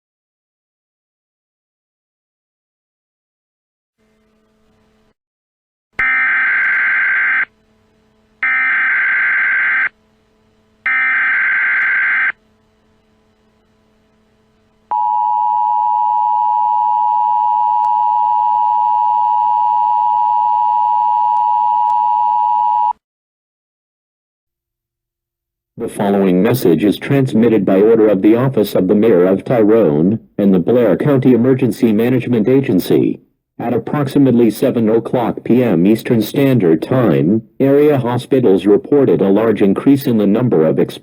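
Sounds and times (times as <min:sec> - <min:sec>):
two-tone alarm: 0:06.0 - 0:07.6, 0:08.4 - 0:10.0, 0:10.8 - 0:12.4, 0:14.9 - 0:23.0.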